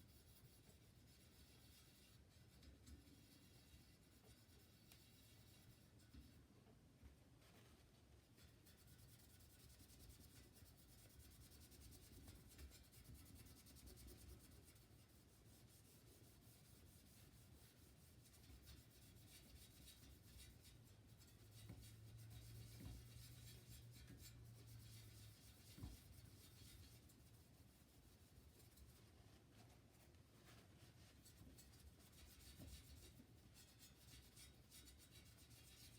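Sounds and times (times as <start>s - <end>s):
faint scratchy rubbing: 12.3s - 35.9s.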